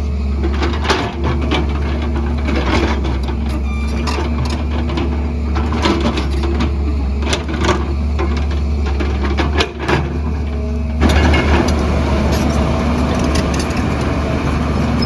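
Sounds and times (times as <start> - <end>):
excavator diesel engine running: 0.0 - 15.0
excavator knocks and clatters: 0.3 - 15.0.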